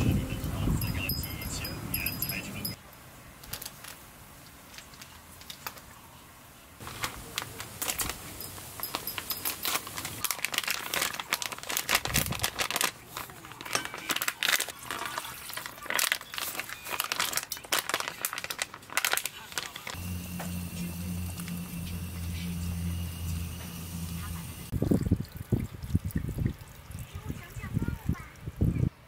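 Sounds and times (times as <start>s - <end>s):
crinkling and crackling: 3.4s - 5.9s, 6.8s - 21.6s.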